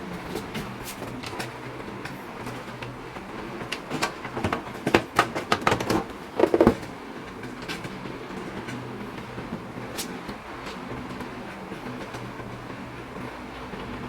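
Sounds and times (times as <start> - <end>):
computer parts clicking and knocking: 5.6 - 6.8.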